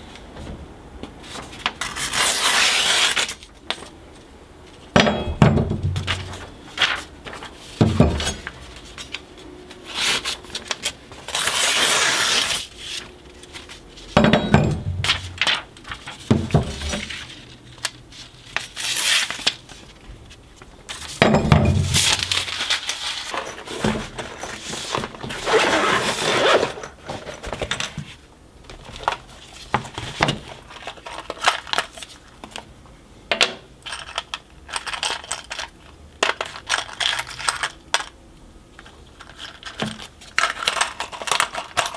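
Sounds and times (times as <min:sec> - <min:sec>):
metal tools clinking on bench: 0:14.2 - 0:15.2.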